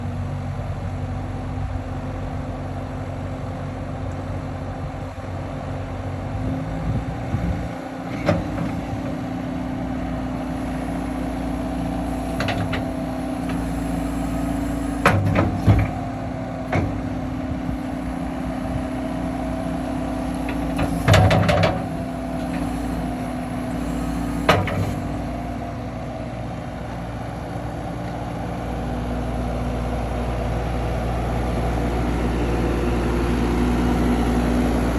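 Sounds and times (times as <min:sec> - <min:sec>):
diesel engine running: 0:00.0 - 0:34.9
sharp knocks and clanks: 0:12.2 - 0:16.0, 0:16.7 - 0:17.0, 0:20.4 - 0:25.3.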